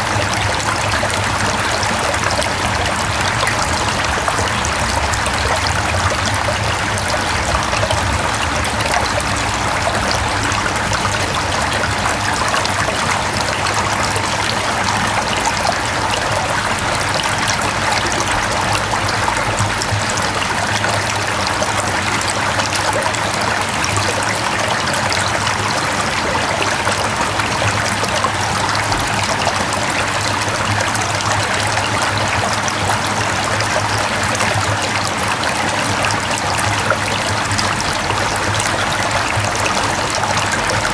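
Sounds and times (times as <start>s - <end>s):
stream flowing over rocks: 0.0s - 40.9s.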